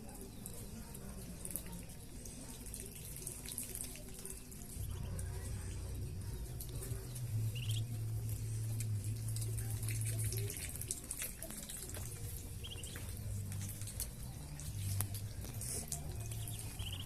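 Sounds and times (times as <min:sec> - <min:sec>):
low steady rumble: 0:04.6 - 0:11.2
ducklings peeping: 0:04.6 - 0:17.0.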